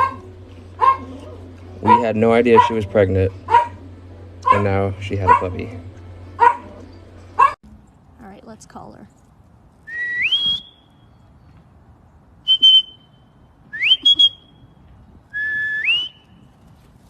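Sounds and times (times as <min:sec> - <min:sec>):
person whistling: 0:09.9 - 0:10.9, 0:12.4 - 0:13.1, 0:13.7 - 0:14.5, 0:15.3 - 0:16.3.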